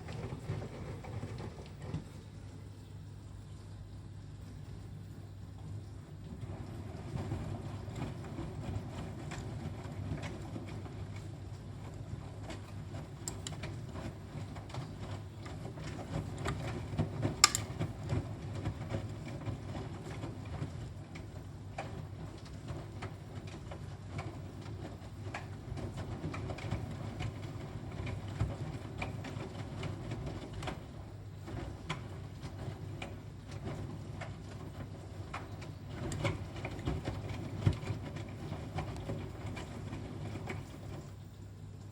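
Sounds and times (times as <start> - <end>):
sharp click: 17.4 - 17.7
washing machine drum turning: 17.4 - 18.0.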